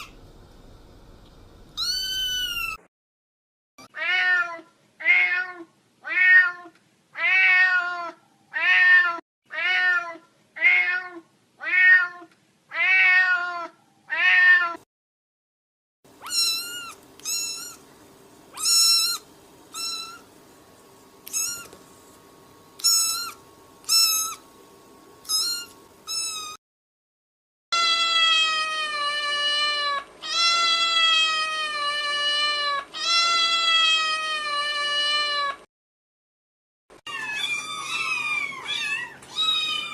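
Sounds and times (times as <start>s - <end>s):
cat meowing: 0.0s - 0.2s, 1.8s - 2.8s, 3.8s - 14.8s, 16.2s - 17.8s, 18.6s - 20.2s, 21.3s - 21.8s, 22.8s - 24.4s, 25.2s - 26.6s, 27.8s - 35.6s, 37.1s - 39.9s
faint steady hum: 0.0s - 2.8s, 16.1s - 26.6s.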